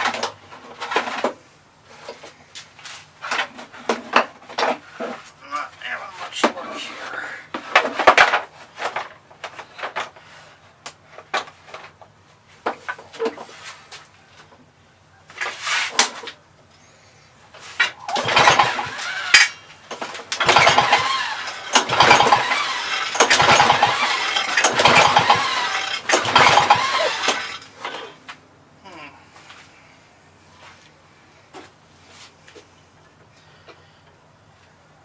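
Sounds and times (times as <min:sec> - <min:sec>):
mower engine cranking on pull-start: 0:17.8 - 0:28.2.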